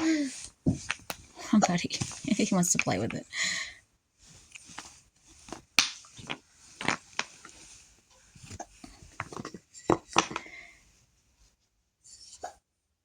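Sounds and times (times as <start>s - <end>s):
wooden puzzle pieces knocking: 4.8s - 7.6s, 8.8s - 10.6s.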